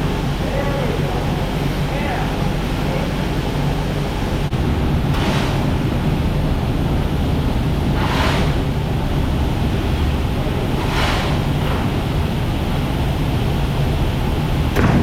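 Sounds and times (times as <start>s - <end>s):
low machinery drone: 0.0s - 15.0s.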